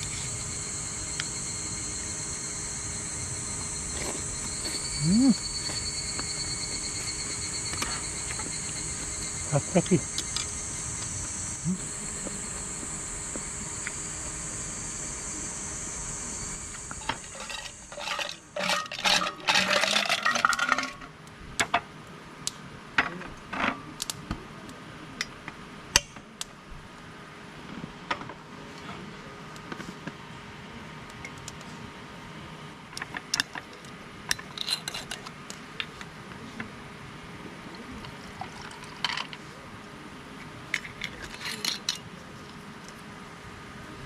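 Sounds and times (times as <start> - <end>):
high insect drone: 0.0 - 19.6.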